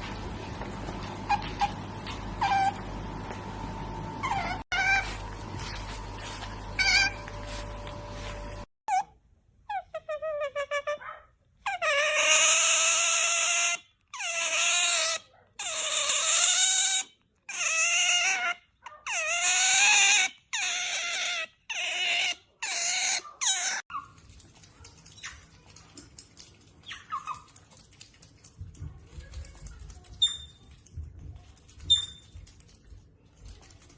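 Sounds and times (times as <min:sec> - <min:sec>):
otter squealing calls: 0:06.8 - 0:07.2, 0:11.7 - 0:23.8.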